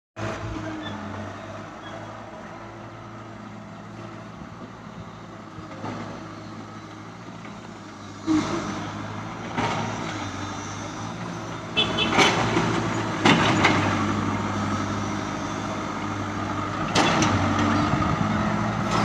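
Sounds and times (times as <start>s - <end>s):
excavator diesel engine running: 0.2s - 19.0s.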